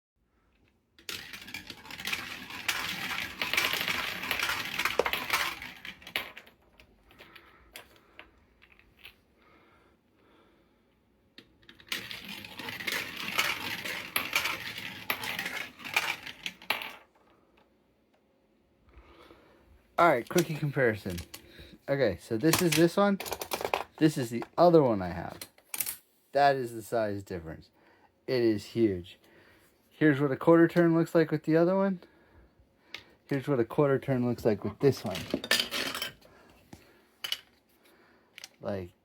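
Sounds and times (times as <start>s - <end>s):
marbles rattling through run: 1.0s - 6.6s, 11.7s - 17.0s.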